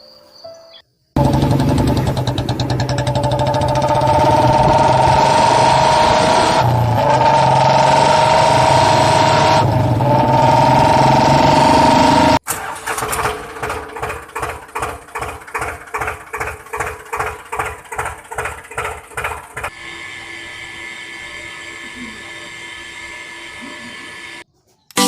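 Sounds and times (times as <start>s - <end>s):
engine chugging: 1.2s - 24.4s
steady high whine: 19.8s - 24.4s.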